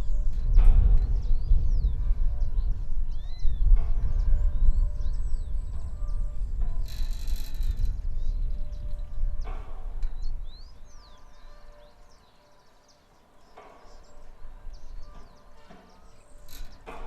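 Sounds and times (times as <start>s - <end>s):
windmill creak or clank: 0.0s - 2.0s, 3.2s - 12.0s, 13.4s - 17.0s
wind gusting against microphone: 0.0s - 12.0s
small birds chirping: 0.0s - 17.0s.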